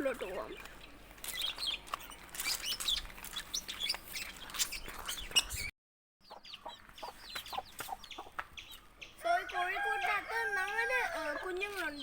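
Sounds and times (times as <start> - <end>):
cage birds chirping: 0.0 - 12.0.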